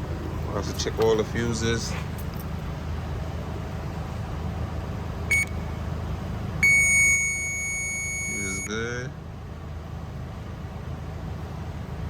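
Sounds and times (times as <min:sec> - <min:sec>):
steady low hum: 0:00.0 - 0:12.0
continuity tester beep: 0:05.3 - 0:05.7, 0:06.6 - 0:08.8.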